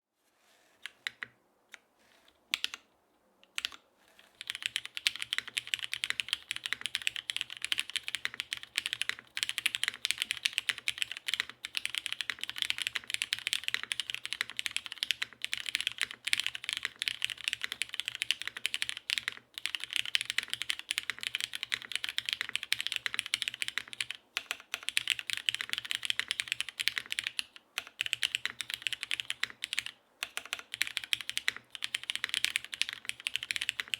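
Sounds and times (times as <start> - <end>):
mechanical keyboard typing: 2.5 - 2.8, 3.5 - 3.8, 4.4 - 33.9.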